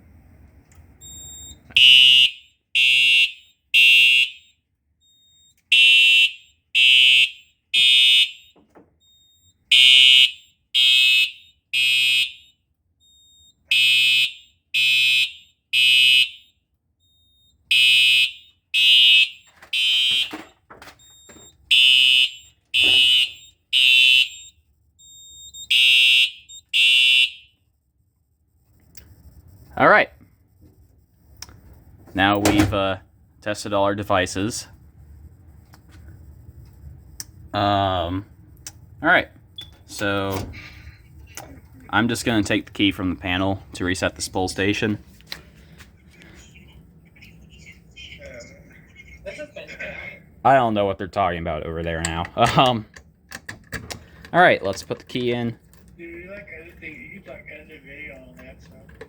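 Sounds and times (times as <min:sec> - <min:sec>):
fire alarm horn blasts: 0:01.0 - 0:40.8.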